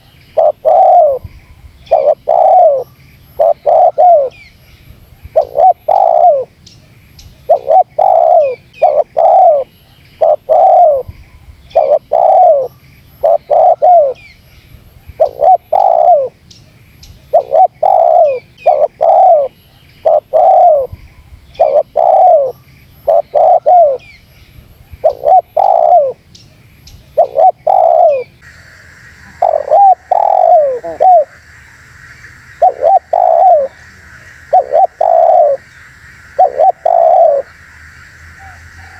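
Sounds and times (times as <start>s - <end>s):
dove cooing: 0.0s - 4.5s, 5.3s - 6.6s, 7.3s - 11.1s, 11.7s - 14.3s, 15.1s - 16.4s, 17.2s - 21.0s, 21.6s - 24.2s, 25.0s - 26.2s, 27.0s - 37.6s
steady high hiss: 24.2s - 38.9s.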